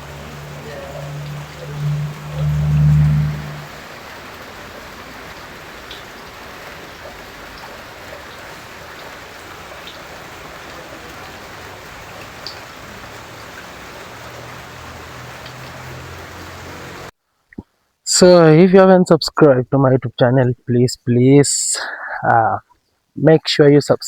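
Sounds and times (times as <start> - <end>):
steady rain patter: 0.0 - 17.1
single louder raindrops: 0.0 - 17.6.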